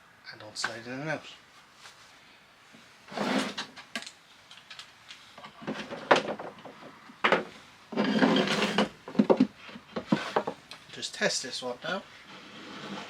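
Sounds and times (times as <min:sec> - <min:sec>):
wooden drawers sliding: 0:03.1 - 0:03.8, 0:05.6 - 0:10.6, 0:12.3 - 0:13.0
wooden scrapes and knocks: 0:03.1 - 0:03.8, 0:05.4 - 0:10.6, 0:12.2 - 0:13.0.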